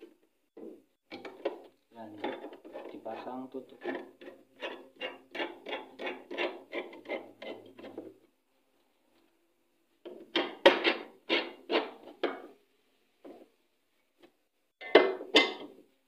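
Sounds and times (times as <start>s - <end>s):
knocking and scraping on washing machine: 10.1s - 12.5s.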